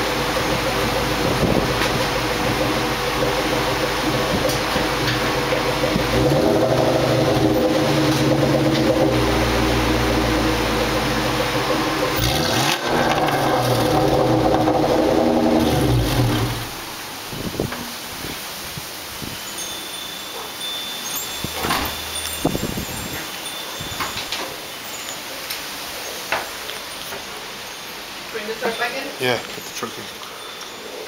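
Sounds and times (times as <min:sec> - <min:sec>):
car engine running: 0:00.0 - 0:17.2
wind buffeting microphone: 0:00.5 - 0:02.7, 0:16.3 - 0:19.4, 0:21.4 - 0:24.2.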